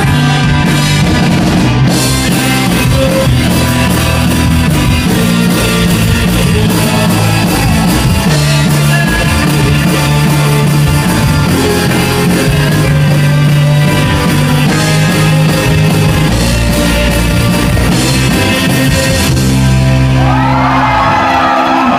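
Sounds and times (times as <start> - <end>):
live rock band playing: 0.0 - 21.9
audience cheering and whooping: 6.8 - 8.3, 20.1 - 21.9.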